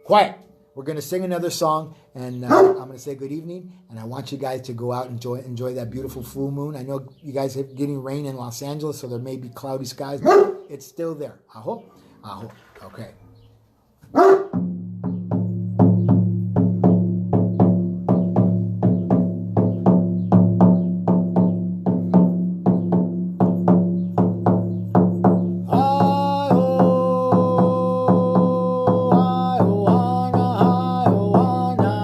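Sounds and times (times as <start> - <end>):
hand drum beating: 14.5 - 32.0
person chanting long notes: 25.7 - 32.0.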